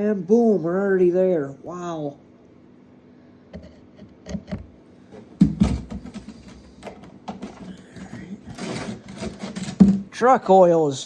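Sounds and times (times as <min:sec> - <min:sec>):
solid thump: 0:05.4 - 0:06.3
rubbing: 0:07.4 - 0:10.1.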